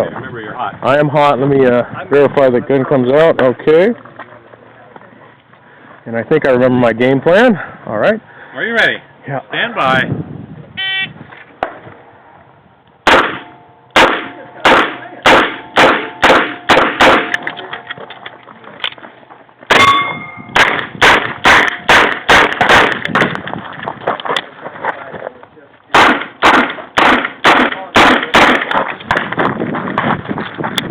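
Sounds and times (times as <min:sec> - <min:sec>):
steel targets clanging: 0:19.7 - 0:20.7.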